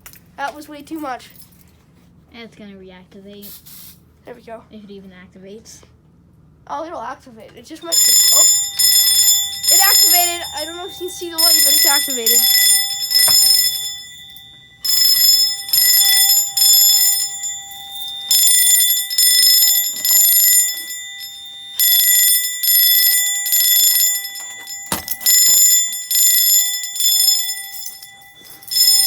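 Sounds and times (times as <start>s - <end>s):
fire alarm ringing in bursts: 7.8s - 29.0s.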